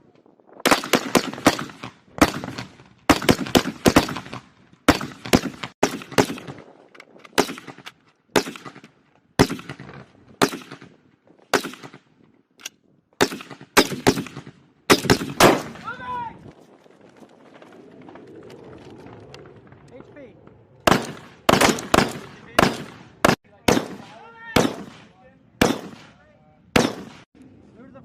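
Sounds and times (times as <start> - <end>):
rifle shots: 0.6 - 6.7, 7.3 - 12.1, 13.2 - 16.0, 20.8 - 27.3.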